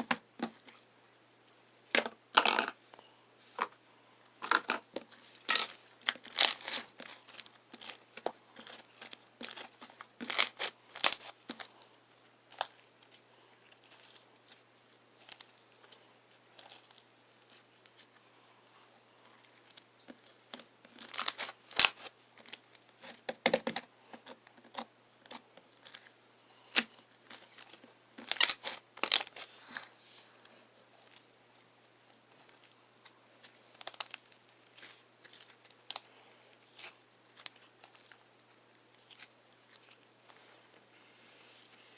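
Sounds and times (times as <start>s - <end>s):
slime crackling and popping: 5.5s - 11.7s, 19.6s - 23.1s, 26.7s - 29.4s, 33.7s - 36.1s.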